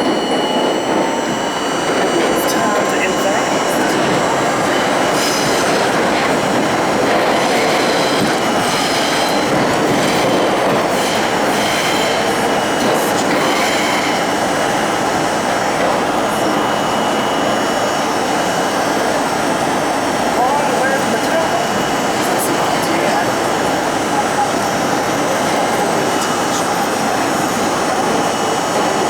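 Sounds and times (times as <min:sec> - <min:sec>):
high wheel squeal: 0:00.0 - 0:18.6
rail joint clicks: 0:00.0 - 0:19.4
subway train rumbling through tunnel: 0:00.0 - 0:29.0.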